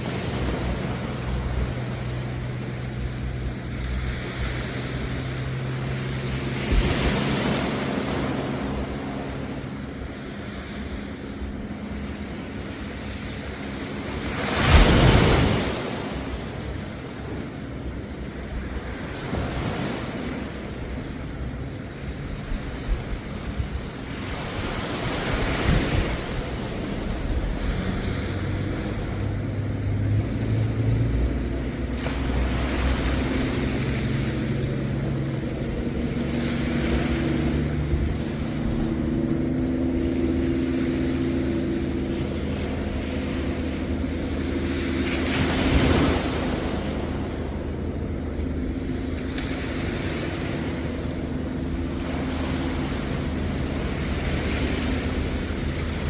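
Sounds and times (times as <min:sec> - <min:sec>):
low engine hum: 0:00.0 - 0:56.0
waves washing onto beach: 0:00.0 - 0:56.0.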